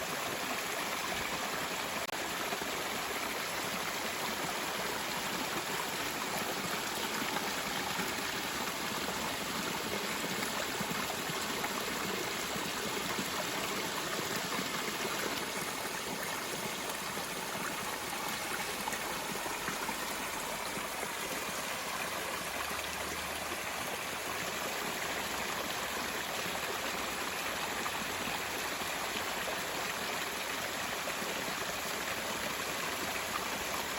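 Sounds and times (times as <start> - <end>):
stream water rushing: 0.0 - 33.9.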